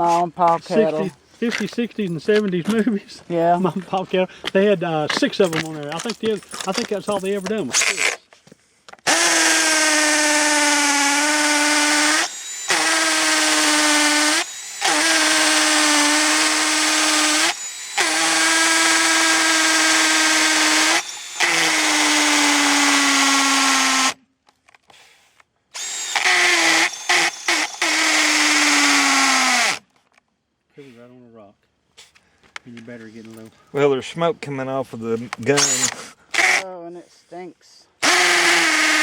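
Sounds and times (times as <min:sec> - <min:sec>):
drill boring into concrete: 0:05.5 - 0:08.2, 0:09.0 - 0:24.2, 0:25.8 - 0:29.8, 0:35.5 - 0:36.7, 0:38.0 - 0:39.0.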